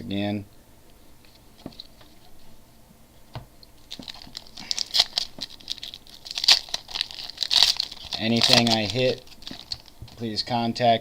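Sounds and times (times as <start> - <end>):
wrapper crinkling and tearing: 3.8 - 10.4.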